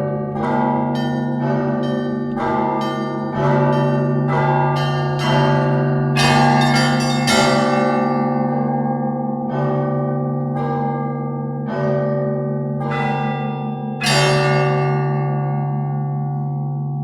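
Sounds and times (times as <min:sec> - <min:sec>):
church bells pealing: 0:00.0 - 0:17.0
large bell humming: 0:00.0 - 0:17.0.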